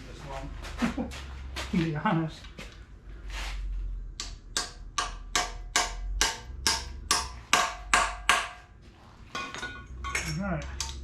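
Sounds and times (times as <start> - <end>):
hammer striking metal: 4.2 - 8.7, 9.3 - 11.0.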